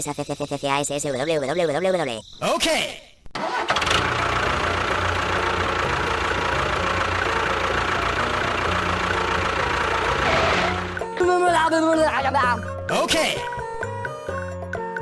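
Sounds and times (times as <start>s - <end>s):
engine idling: 3.4s - 11.2s.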